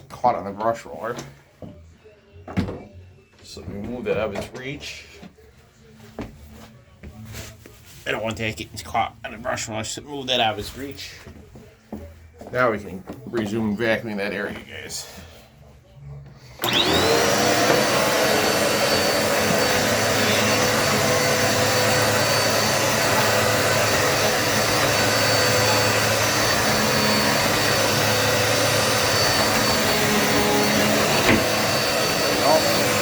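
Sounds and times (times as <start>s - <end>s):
vacuum cleaner motor whine: 16.5s - 33.0s.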